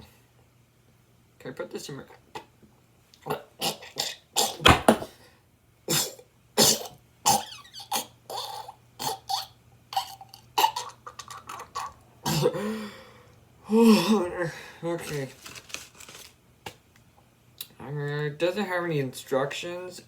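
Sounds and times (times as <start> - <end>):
short sharp coughing-like noises: 5.9 - 9.5.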